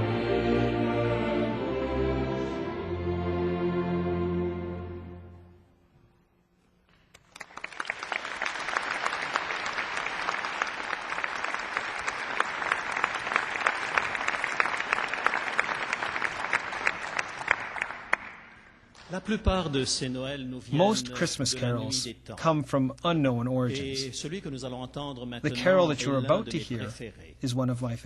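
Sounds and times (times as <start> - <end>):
audience applauding: 7.1 - 19.2.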